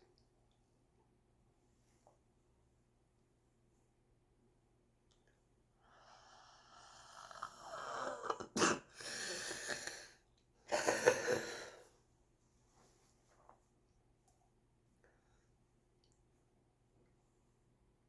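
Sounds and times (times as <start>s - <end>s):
person coughing: 8.2s - 9.2s, 10.7s - 11.8s
hacking cough: 8.4s - 8.9s, 10.7s - 11.7s.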